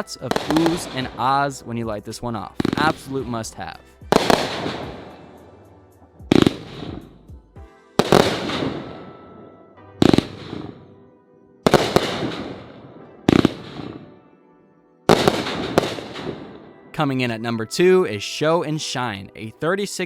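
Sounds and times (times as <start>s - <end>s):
firework shells booming: 4.1s - 5.4s, 6.3s - 7.1s, 8.0s - 9.1s, 11.7s - 14.1s, 15.1s - 16.7s.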